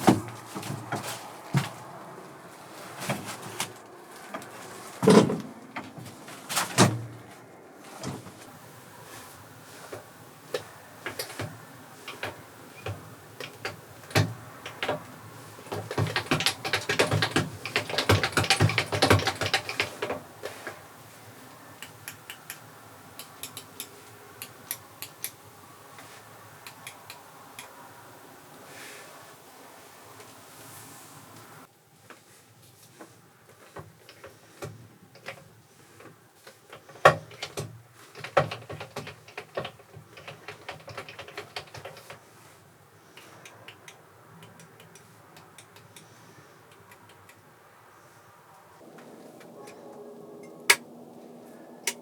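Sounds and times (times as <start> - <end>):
irregular knocks and clicks: 10.0 - 20.8, 36.7 - 42.2
rapid clatter: 10.6 - 20.6.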